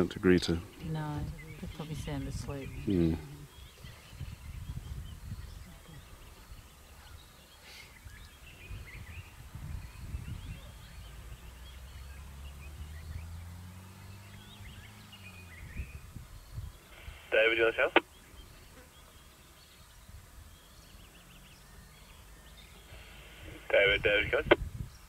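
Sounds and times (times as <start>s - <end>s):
small birds chirping: 0.0s - 25.0s
low engine hum: 8.1s - 25.0s.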